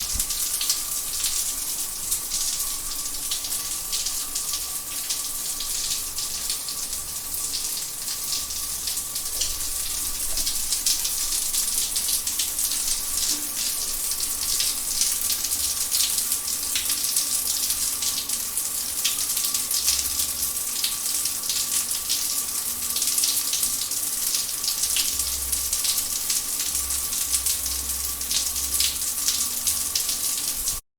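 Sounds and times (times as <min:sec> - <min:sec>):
shower water spraying: 0:00.0 - 0:16.5.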